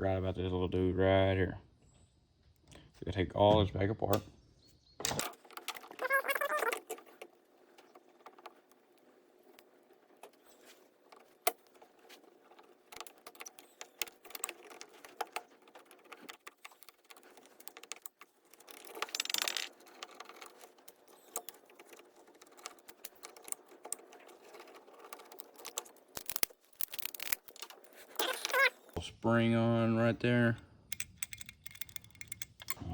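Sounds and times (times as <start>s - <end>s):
handling noise: 5.0s - 29.0s
small metal parts clinking: 5.2s - 29.0s, 30.9s - 32.9s.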